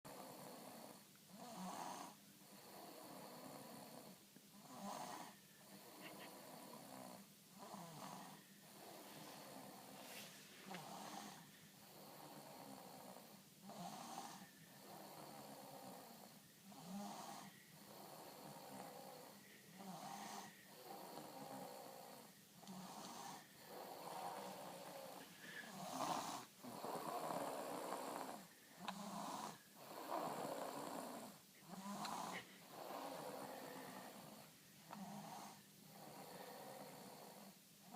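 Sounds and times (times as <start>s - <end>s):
person snoring: 10.7s - 37.9s.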